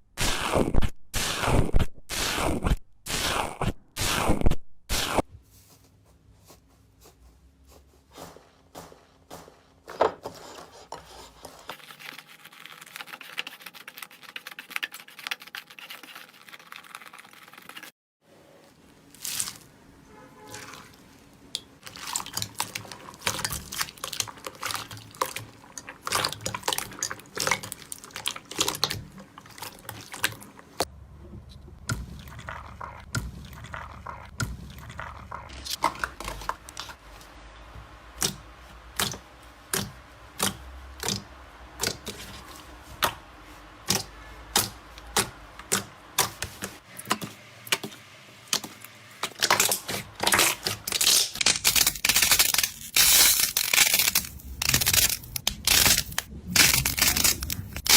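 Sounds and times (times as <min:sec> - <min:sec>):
slime squishing: 0:21.8 - 0:30.8.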